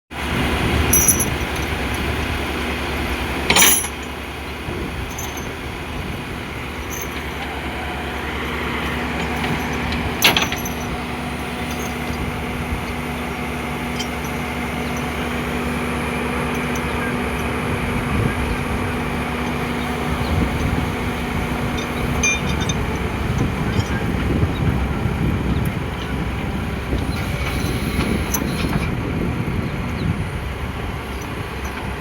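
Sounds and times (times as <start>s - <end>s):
excavator diesel engine running: 0.2s - 32.0s
sharp metal clanks: 0.9s - 2.1s, 3.5s - 4.2s, 5.0s - 5.6s, 6.8s - 7.5s, 8.9s - 12.3s, 20.2s - 24.0s.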